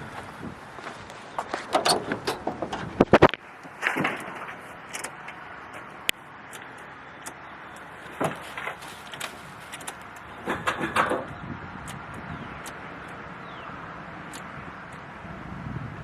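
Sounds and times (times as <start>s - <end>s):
scattered clicks and knocks: 1.4s - 13.2s.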